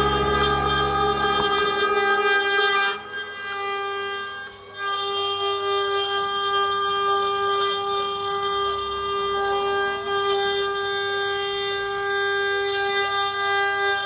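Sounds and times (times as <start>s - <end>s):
machine spindle whine: 0.0s - 7.3s.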